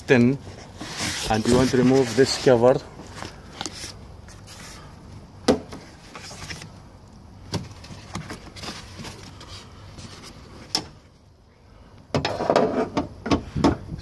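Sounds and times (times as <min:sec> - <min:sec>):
light scraping and handling noise: 0:00.1 - 0:06.8, 0:07.5 - 0:10.9.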